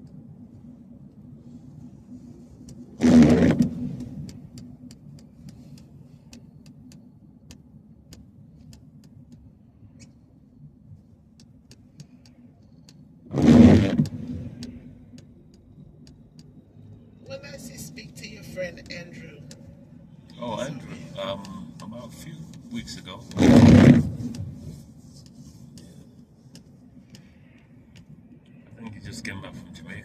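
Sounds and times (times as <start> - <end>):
truck drone from inside cab: 0.0 - 30.0
loud rushing bursts: 23.4 - 24.4.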